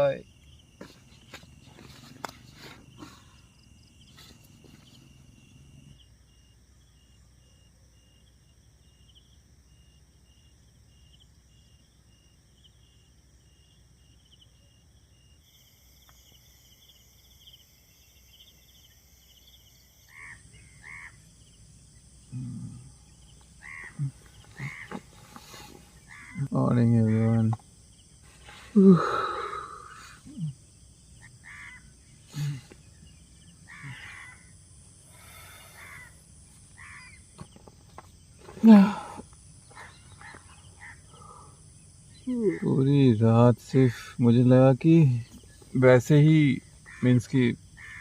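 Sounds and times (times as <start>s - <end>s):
crickets and insects chirping: 0.0s - 48.0s
short animal calls: 20.1s - 21.2s, 23.6s - 27.4s, 31.2s - 32.8s, 33.6s - 34.5s, 35.1s - 36.2s, 36.8s - 37.2s, 39.7s - 41.6s.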